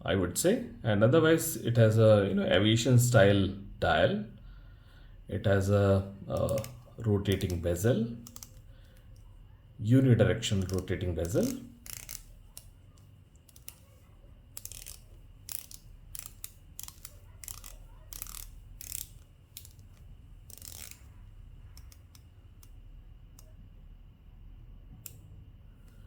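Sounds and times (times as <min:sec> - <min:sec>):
watch bezel ratcheting clicks: 0:06.3 - 0:09.2, 0:10.4 - 0:23.5.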